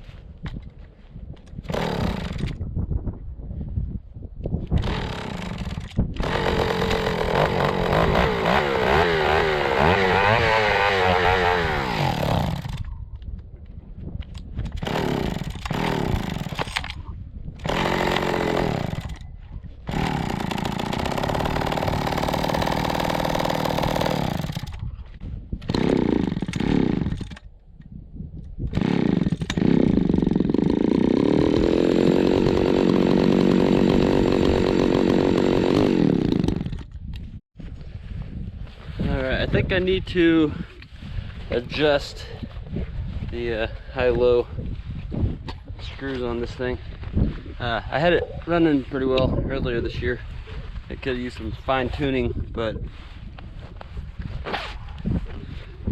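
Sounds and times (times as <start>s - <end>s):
chainsaw running unevenly: 1.7s - 2.5s, 4.8s - 12.9s, 14.8s - 16.9s, 17.6s - 19.2s, 19.9s - 24.8s, 25.6s - 27.4s, 28.7s - 36.9s.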